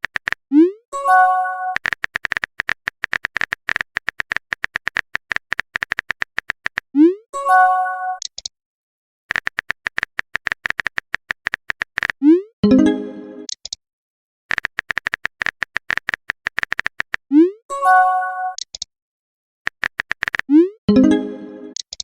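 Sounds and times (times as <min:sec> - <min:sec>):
phone keyboard typing clicks: 0:00.0 - 0:00.4, 0:01.7 - 0:06.9, 0:09.3 - 0:12.2, 0:14.5 - 0:17.2, 0:18.6 - 0:18.9, 0:19.7 - 0:20.5
notification chime: 0:12.6 - 0:13.5, 0:20.9 - 0:21.8.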